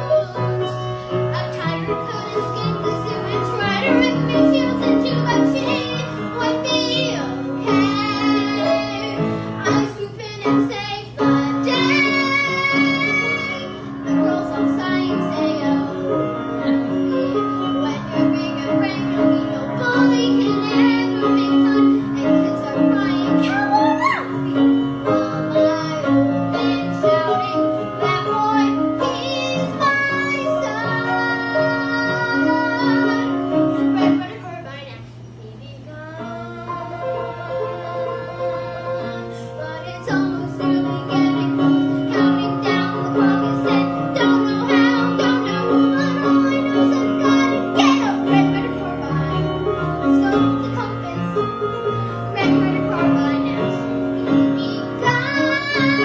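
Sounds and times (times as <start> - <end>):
instrumental backing music: 0.0 - 34.6, 36.2 - 56.0
high child-like voice singing: 19.8 - 24.7
instrumental accompaniment: 23.3 - 25.2
person singing high: 23.4 - 24.6.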